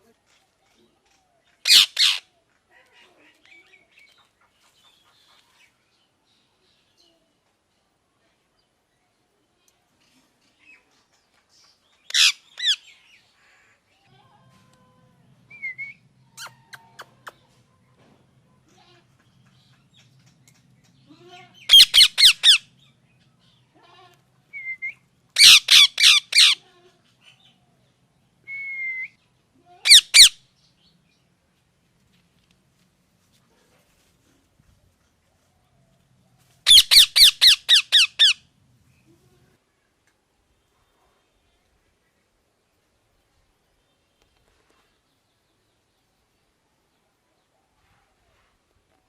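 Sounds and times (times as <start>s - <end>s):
parrot squawking harshly: 1.7s - 2.2s, 12.1s - 12.8s, 21.7s - 22.6s, 25.4s - 26.6s, 29.8s - 30.4s, 36.7s - 38.4s.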